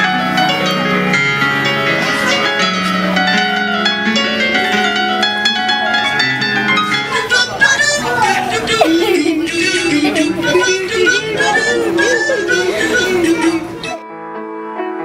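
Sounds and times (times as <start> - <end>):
instrumental piano music: 0.0 - 7.3.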